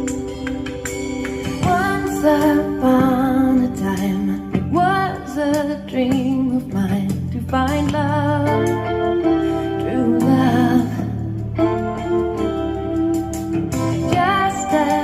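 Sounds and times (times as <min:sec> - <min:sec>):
steady keyboard accompaniment: 0:00.0 - 0:05.7, 0:08.5 - 0:15.0.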